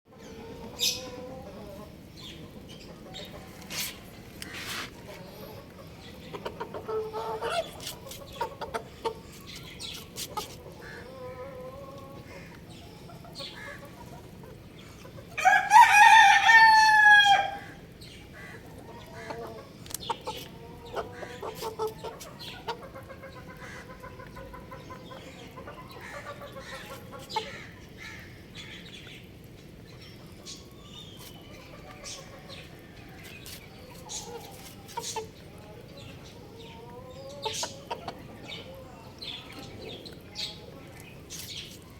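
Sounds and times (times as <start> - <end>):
chickens clucking: 0.1 - 41.9
rooster crowing: 15.4 - 17.8.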